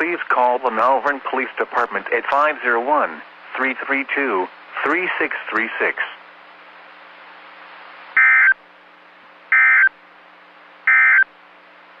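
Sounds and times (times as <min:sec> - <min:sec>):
radio hiss: 0:00.0 - 0:06.3
faint hum: 0:00.0 - 0:12.0
harsh buzzing data chirps: 0:08.2 - 0:08.6, 0:09.5 - 0:10.0, 0:10.8 - 0:11.4.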